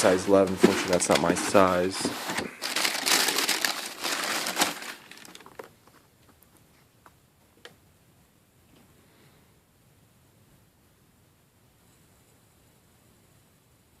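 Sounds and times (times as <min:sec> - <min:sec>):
tissue paper crinkling: 0:00.0 - 0:05.7.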